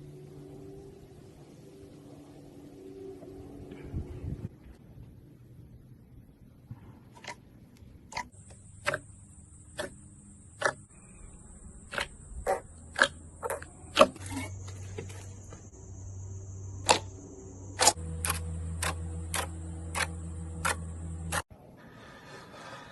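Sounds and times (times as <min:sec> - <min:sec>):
faint high whine: 0:00.0 - 0:06.9, 0:13.8 - 0:21.8
low hum: 0:00.0 - 0:22.4.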